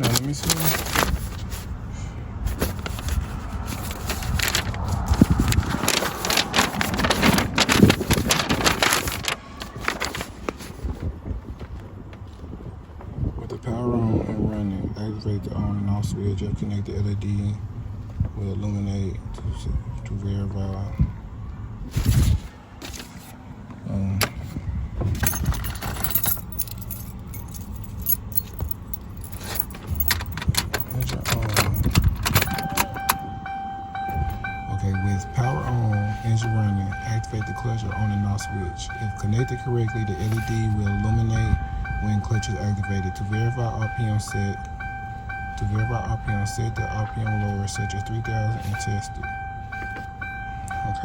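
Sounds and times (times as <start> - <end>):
metallic clinking and jingling: 0.0 - 1.7, 2.5 - 10.8, 25.2 - 37.7, 38.4 - 46.8
handling wiring and small parts: 0.0 - 12.5, 21.9 - 51.0
steady low hum: 0.0 - 22.5
low rumble: 0.5 - 14.9.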